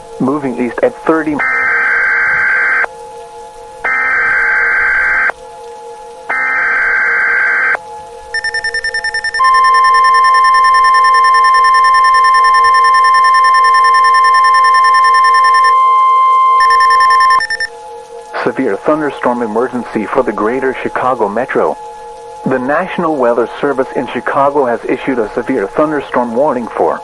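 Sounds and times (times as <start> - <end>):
digital data tone bursts: 1.2 - 2.9, 3.9 - 5.4, 6.3 - 7.8, 8.4 - 17.7
two-tone attention signal: 1.4 - 2.9, 3.9 - 5.4, 6.3 - 7.8, 8.4 - 17.8
fast-pulsing beeps: 6.3 - 7.8, 8.4 - 17.7.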